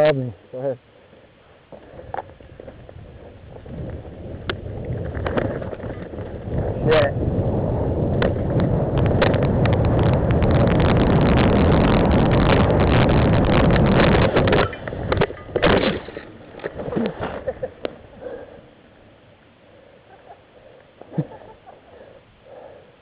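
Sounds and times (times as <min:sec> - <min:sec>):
bike tyre rumble: 0:00.9 - 0:23.0
wind rush: 0:01.9 - 0:17.2.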